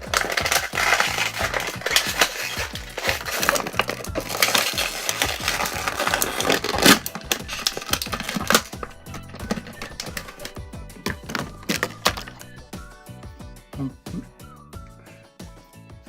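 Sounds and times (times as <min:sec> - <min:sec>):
packaging crinkling and crackling: 0:00.0 - 0:12.6.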